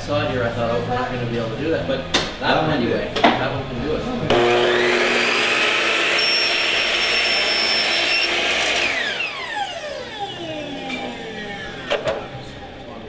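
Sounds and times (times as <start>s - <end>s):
chop saw running and winding down: 4.3s - 11.9s.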